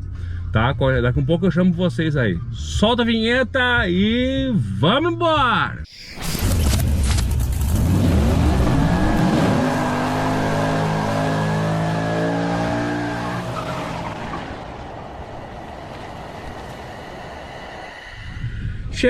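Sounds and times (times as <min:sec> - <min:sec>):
racing car engine revving: 0:06.6 - 0:17.9.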